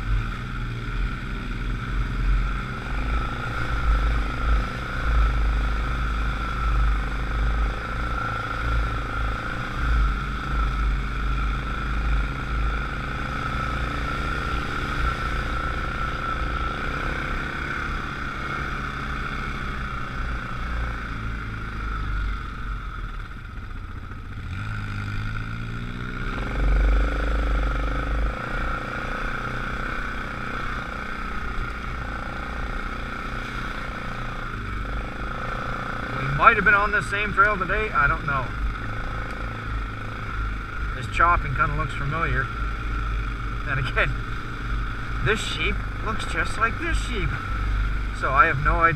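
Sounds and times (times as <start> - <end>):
atv engine running: 0.0 - 48.9.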